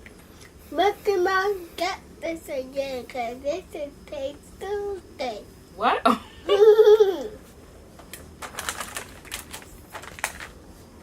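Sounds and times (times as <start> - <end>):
plastic package crinkling: 8.1 - 10.6.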